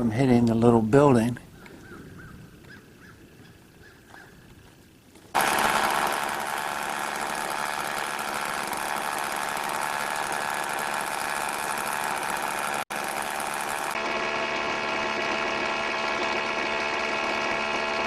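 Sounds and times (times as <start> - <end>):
chainsaw running at high revs: 5.3 - 18.0.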